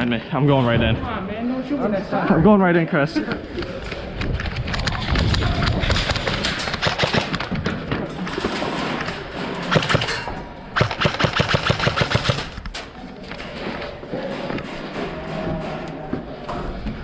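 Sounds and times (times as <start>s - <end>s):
airsoft guns firing: 6.1s - 7.7s, 9.7s - 12.7s.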